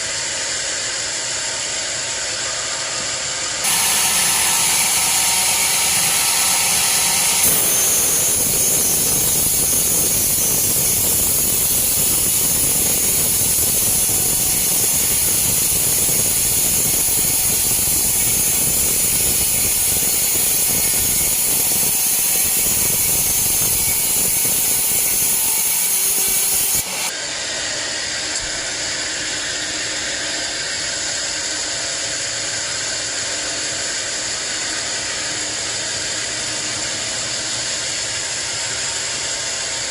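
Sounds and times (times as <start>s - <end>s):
band saw cutting log: 3.6s - 30.0s.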